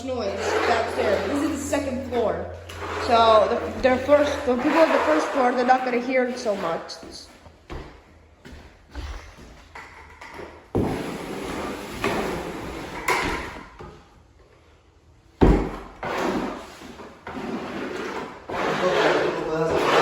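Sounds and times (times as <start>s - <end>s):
scraping and rustling on wood: 0.0s - 7.8s, 10.3s - 13.6s, 15.8s - 20.0s.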